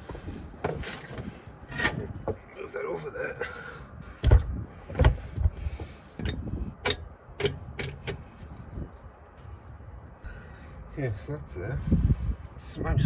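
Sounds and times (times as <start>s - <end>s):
metal tools knocking and clinking: 0.8s - 2.4s, 6.2s - 8.2s.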